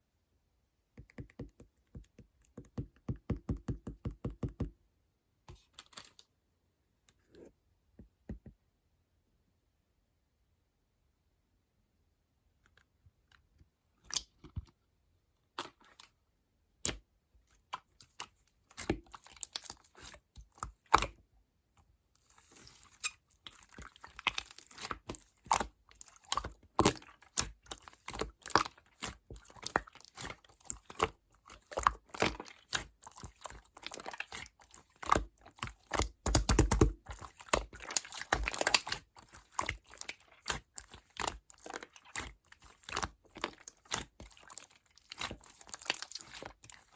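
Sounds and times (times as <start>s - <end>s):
slime squishing and popping: 22.8s - 46.9s.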